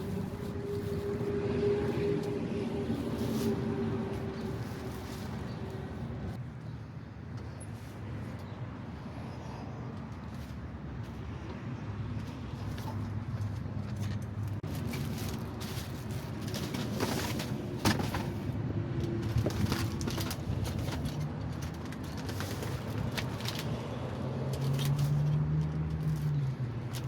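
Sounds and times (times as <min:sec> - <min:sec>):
clicks and rustles: 0:12.2 - 0:27.0.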